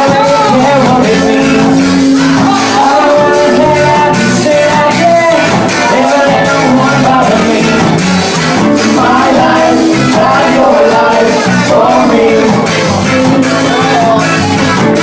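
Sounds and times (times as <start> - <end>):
drum beat: 0.0 - 15.0
electric guitar: 0.0 - 15.0
ska band playing: 0.0 - 15.0.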